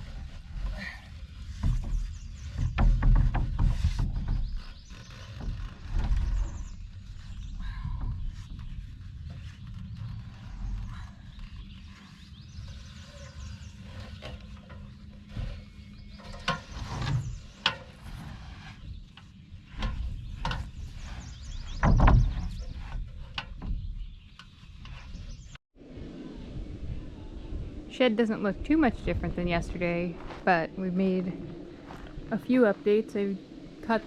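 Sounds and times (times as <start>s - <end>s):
plywood knocks and thumps: 1.5s - 6.6s, 21.7s - 24.0s
steady low rumble: 25.8s - 34.0s.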